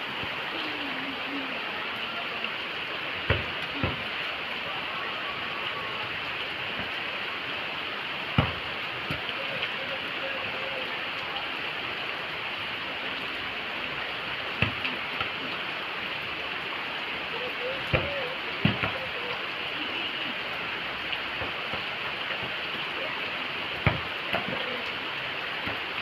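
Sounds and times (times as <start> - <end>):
steady rain falling: 0.0 - 26.0
dull thuds: 8.4 - 8.7, 23.8 - 24.6.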